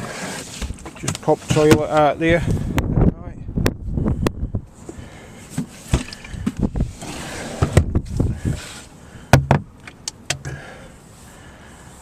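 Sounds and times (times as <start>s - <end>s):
knocks and bumps of fittings: 9.3s - 10.6s.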